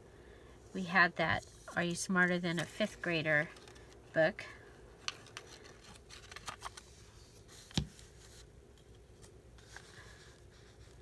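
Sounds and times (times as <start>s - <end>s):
paper rustling: 1.4s - 4.0s, 5.0s - 11.0s.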